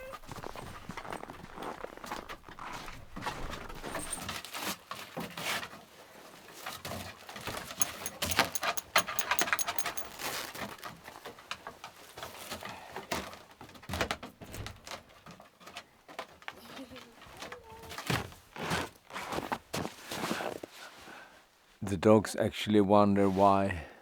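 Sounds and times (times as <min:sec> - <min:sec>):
collar metal jingling: 0:00.0 - 0:04.4, 0:07.7 - 0:10.5
rustling: 0:00.0 - 0:04.4
dog claws clicking on wood: 0:07.8 - 0:10.2.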